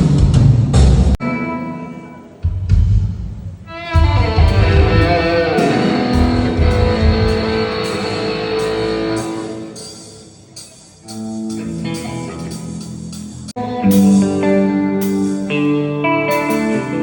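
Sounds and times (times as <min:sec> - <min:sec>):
guitar chord ringing: 0:01.2 - 0:02.5, 0:03.7 - 0:10.3, 0:13.6 - 0:17.0
guitar notes: 0:01.2 - 0:02.8, 0:03.6 - 0:17.0
heavy low bass hits: 0:04.0 - 0:08.0.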